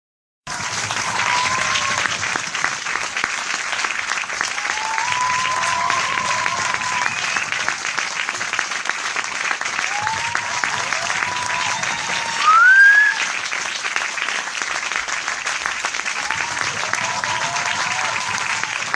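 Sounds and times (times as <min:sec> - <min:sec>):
audience applauding: 0:00.5 - 0:18.9
whistles: 0:06.8 - 0:07.7, 0:11.8 - 0:13.3.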